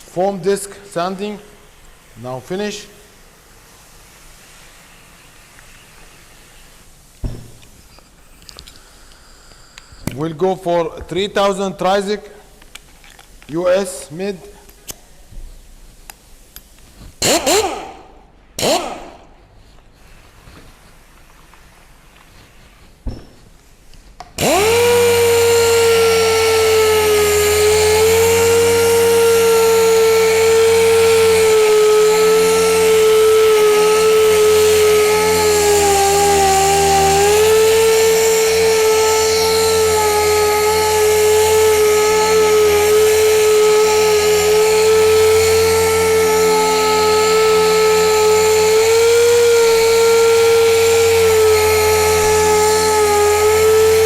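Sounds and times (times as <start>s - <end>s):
machine sander whining: 24.4s - 54.0s.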